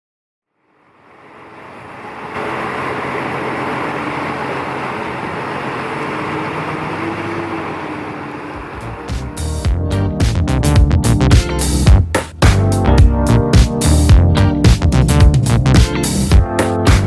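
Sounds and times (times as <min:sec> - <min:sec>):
boat engine running: 0:00.9 - 0:12.1.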